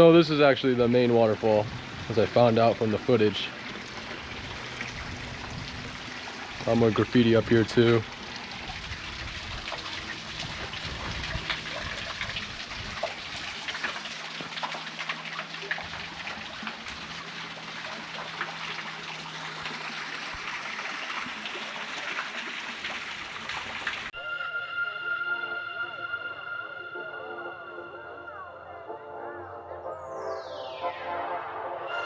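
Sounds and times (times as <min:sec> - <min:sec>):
small waterfall splashing on rocks: 0:03.2 - 0:24.1.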